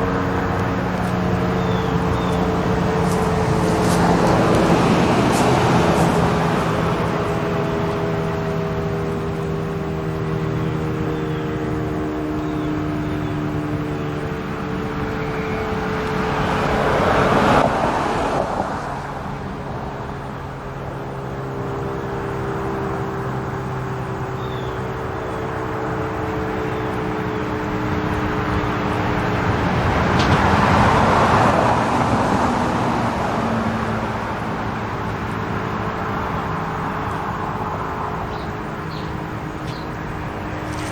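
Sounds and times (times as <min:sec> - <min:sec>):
warning siren chord: 0:00.0 - 0:17.6.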